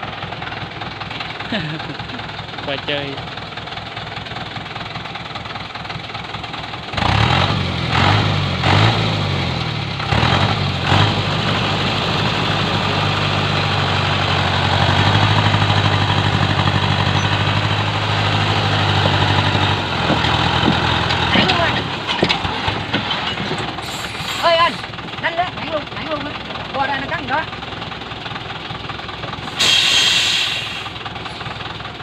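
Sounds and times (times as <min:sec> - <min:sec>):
truck engine revving under load: 0:06.9 - 0:27.6, 0:28.3 - 0:31.8.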